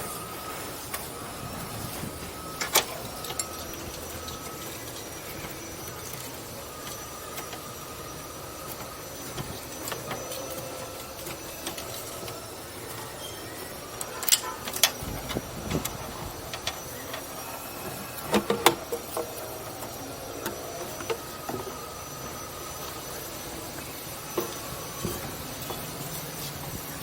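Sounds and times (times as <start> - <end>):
faint steady whine: 0.0 - 27.0
sharp clicks and knocks: 8.5 - 23.1.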